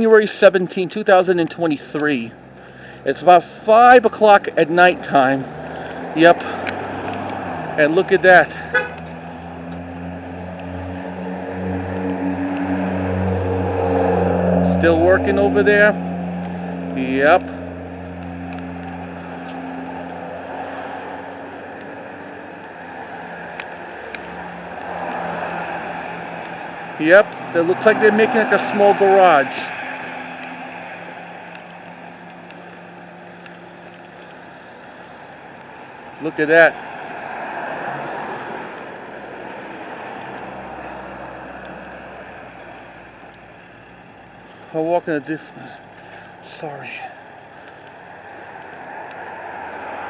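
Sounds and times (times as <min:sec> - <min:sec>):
street traffic noise: 0:00.0 - 0:50.0
vehicle engine rumble: 0:00.0 - 0:50.0
low hum: 0:09.0 - 0:27.6.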